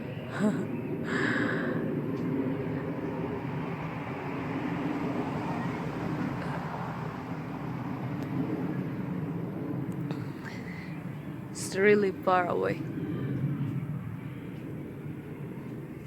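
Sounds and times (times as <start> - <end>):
distant engine rumble: 0.0 - 16.0.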